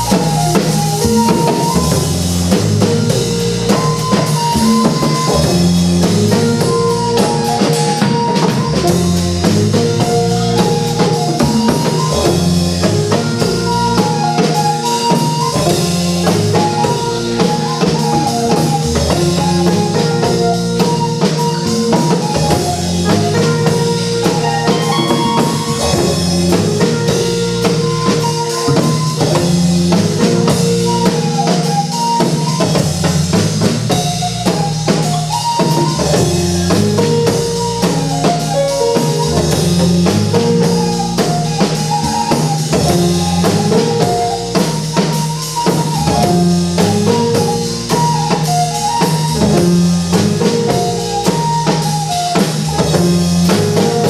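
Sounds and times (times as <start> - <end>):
drum kit beat: 0.0 - 54.0
high melodic figure: 0.0 - 54.0
stepping bass line: 15.4 - 31.4.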